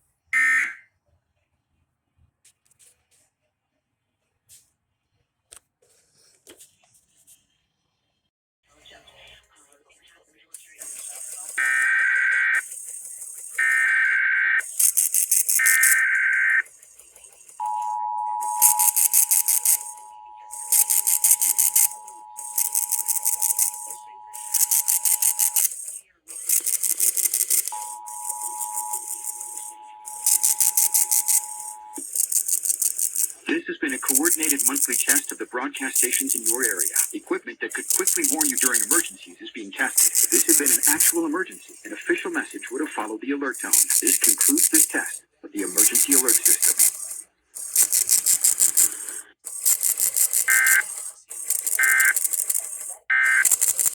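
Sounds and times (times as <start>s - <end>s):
two-tone attention signal: 0.4s - 0.8s, 11.6s - 12.8s, 13.6s - 16.7s, 17.4s - 47.2s, 50.1s - 53.9s
buzzing digital data bursts: 10.9s - 39.2s, 39.8s - 53.9s.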